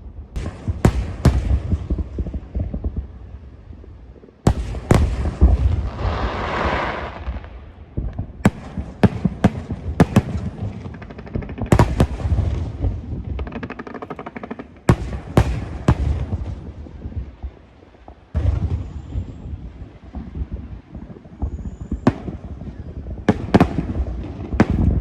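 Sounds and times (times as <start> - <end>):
fireworks bangs: 0.0 - 3.9, 4.5 - 25.0
fireworks hissing and crackling: 0.0 - 25.0.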